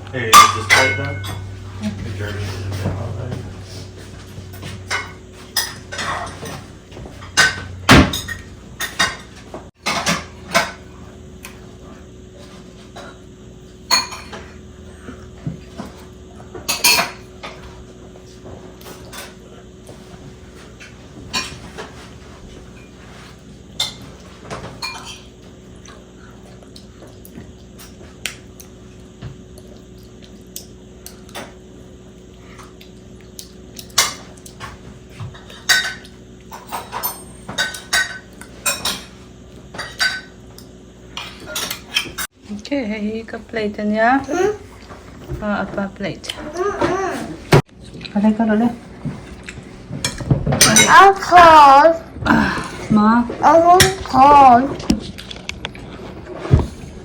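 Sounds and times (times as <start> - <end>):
plates and cutlery clinking: 0.3 - 1.6, 4.5 - 10.9, 16.6 - 17.7, 23.8 - 25.4, 33.9 - 40.4, 49.9 - 51.4.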